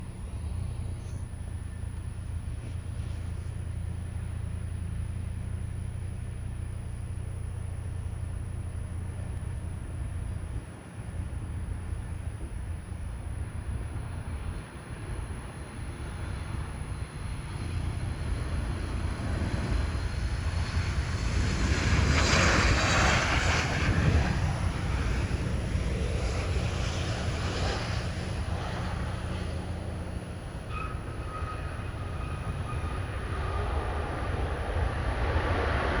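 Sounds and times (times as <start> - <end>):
jet engines rumbling: 0.0 - 36.0
thin steady whine: 0.0 - 36.0.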